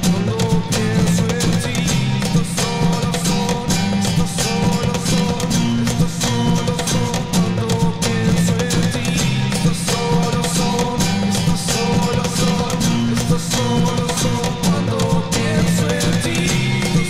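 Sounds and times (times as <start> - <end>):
looped guitar parts: 0.0 - 17.0
percussive beat: 0.0 - 17.0.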